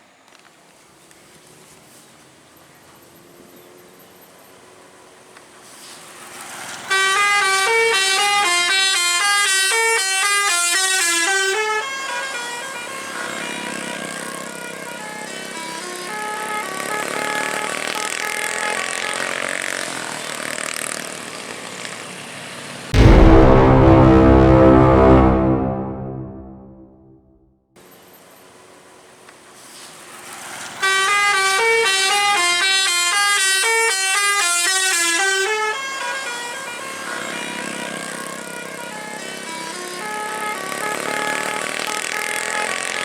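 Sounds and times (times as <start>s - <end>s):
multi-tone musical air horn: 6.9s - 18.3s, 23.0s - 27.4s, 30.8s - 42.9s
music: 23.0s - 27.4s.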